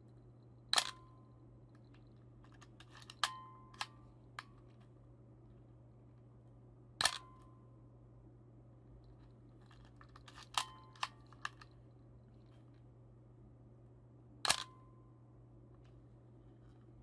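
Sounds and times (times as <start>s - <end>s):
camera mechanical clicks: 0.8s - 1.0s, 7.0s - 7.3s, 10.2s - 11.7s, 14.5s - 14.8s
camera shutter clack: 0.8s - 1.0s, 7.0s - 7.3s, 10.3s - 11.6s, 14.5s - 14.8s.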